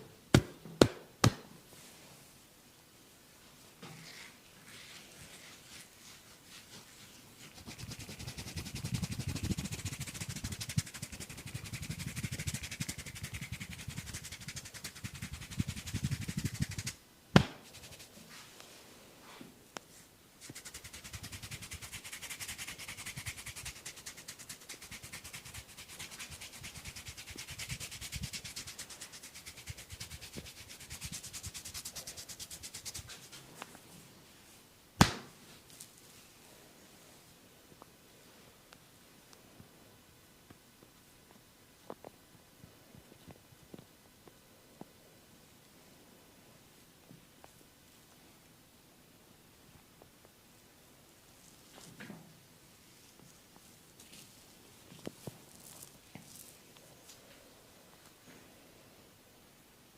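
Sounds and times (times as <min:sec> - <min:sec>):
hands slapping oiled skin: 0:07.6 - 0:18.1
loud sharp snap: 0:17.3 - 0:17.7, 0:35.0 - 0:35.4.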